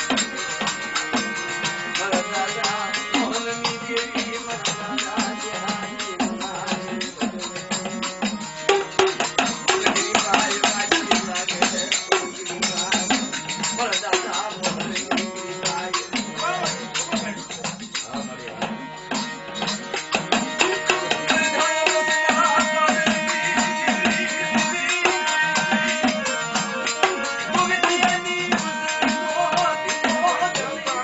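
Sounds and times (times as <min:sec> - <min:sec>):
drums: 0:00.0 - 0:31.0
held instrument tones: 0:00.0 - 0:31.0
jingling hand percussion: 0:00.0 - 0:31.0.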